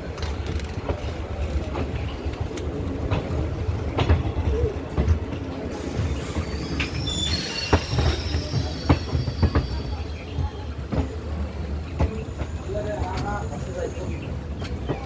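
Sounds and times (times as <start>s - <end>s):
train rumbling on rails: 0.0s - 15.0s
wheels clacking over rail joints: 0.0s - 15.0s
metallic wheel squeal: 5.8s - 10.0s.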